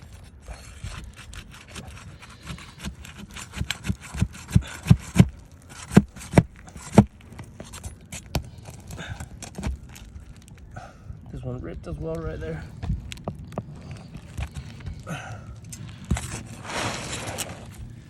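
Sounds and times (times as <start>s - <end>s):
knocks and scrapes on roof: 0.0s - 10.1s, 15.8s - 17.8s.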